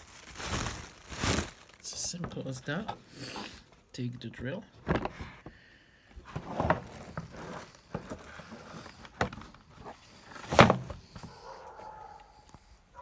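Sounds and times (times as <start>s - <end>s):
clicks and rustles of handling: 4.8s - 12.8s.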